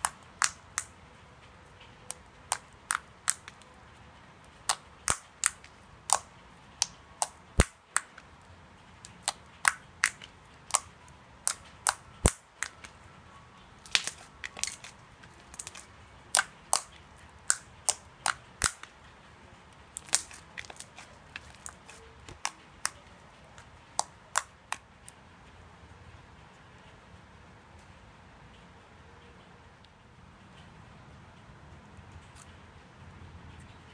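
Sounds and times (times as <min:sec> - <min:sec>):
slime popping and clicking: 0:02.1 - 0:03.6, 0:04.7 - 0:08.2, 0:13.8 - 0:14.9, 0:15.5 - 0:18.9, 0:20.0 - 0:23.0.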